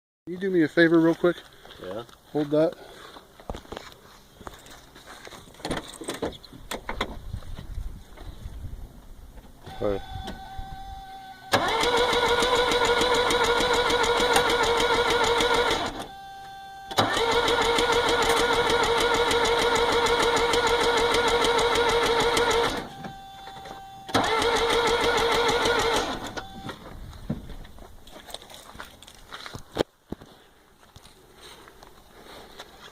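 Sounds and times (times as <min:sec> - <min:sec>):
faint steady tone: 0:09.6 - 0:11.6, 0:16.0 - 0:17.0, 0:22.8 - 0:24.1
diesel engine cranking on starter: 0:11.5 - 0:16.2, 0:16.9 - 0:26.9.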